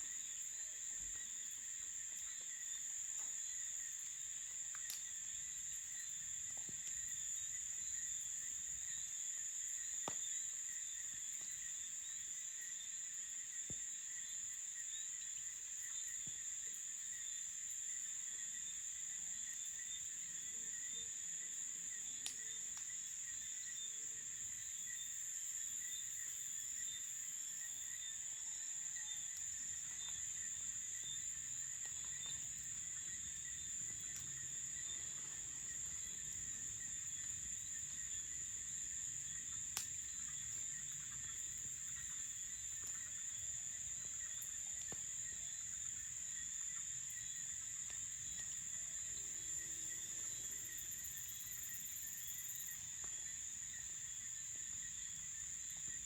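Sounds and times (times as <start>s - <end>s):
crickets trilling: 0.0s - 56.0s
faint clicks: 4.7s - 5.1s.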